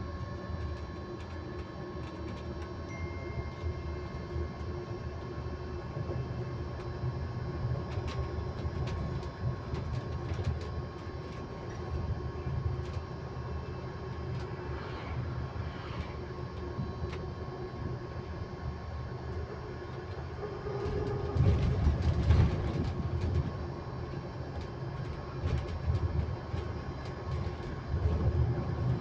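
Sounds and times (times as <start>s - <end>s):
electric bus whining tone: 0.0s - 29.0s
light rattles and clicks: 7.8s - 11.9s, 24.5s - 29.0s.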